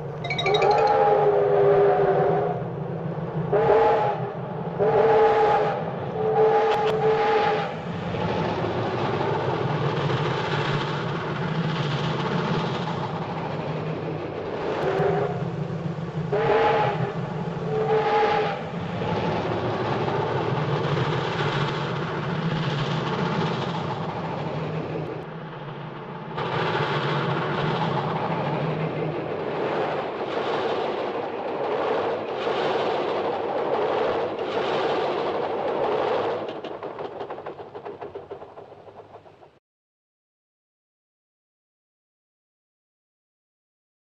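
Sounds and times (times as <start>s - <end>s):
train rumbling on track: 2.3s - 39.6s
train whistle blasts: 16.3s - 17.1s.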